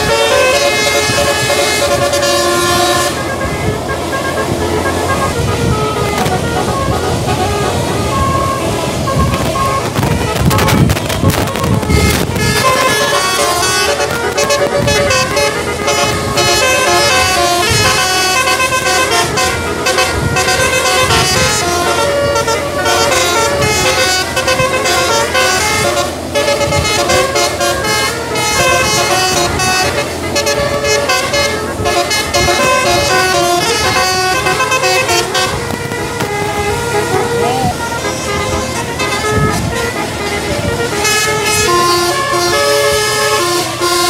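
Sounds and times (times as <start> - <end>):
musical air horn playing a tune: 0.0 - 44.0.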